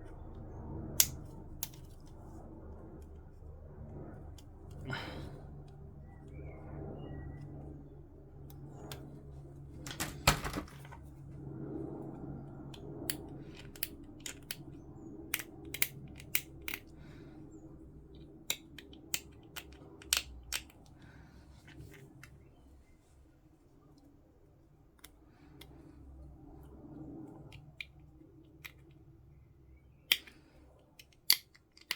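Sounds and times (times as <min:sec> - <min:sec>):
low steady hum: 0:00.0 - 0:31.9
plastic parts clicking and tapping: 0:13.0 - 0:16.9, 0:18.2 - 0:21.0, 0:30.0 - 0:31.9.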